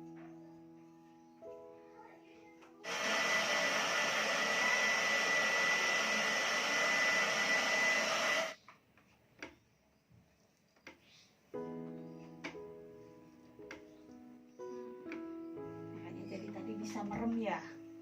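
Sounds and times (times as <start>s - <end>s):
hair dryer whooshing and whining: 2.8s - 8.6s
soft piano notes: 11.5s - 18.0s.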